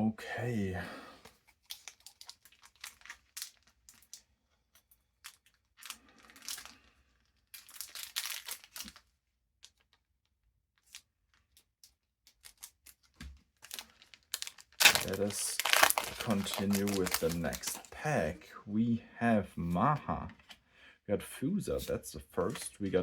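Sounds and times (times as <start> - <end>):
plastic packaging crinkling: 1.4 - 10.0, 12.3 - 18.1
packaging tearing: 1.6 - 4.2, 5.2 - 6.8, 7.4 - 9.0, 12.3 - 17.9.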